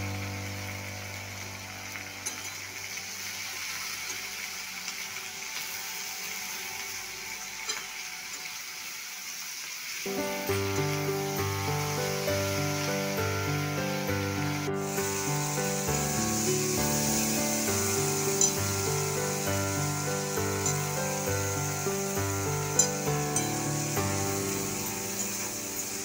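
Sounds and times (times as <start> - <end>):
background music: 0.0 - 26.0
food sizzling in a pan: 0.0 - 26.0.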